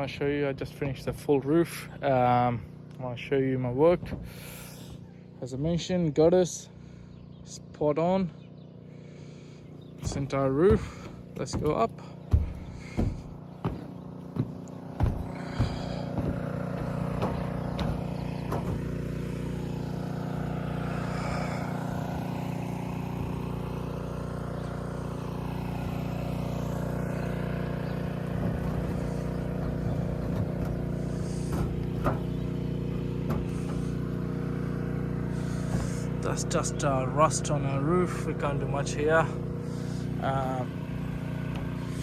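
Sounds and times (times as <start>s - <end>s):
steady engine drone: 0.0s - 42.0s
sharp knocks: 10.0s - 19.5s, 28.2s - 34.0s.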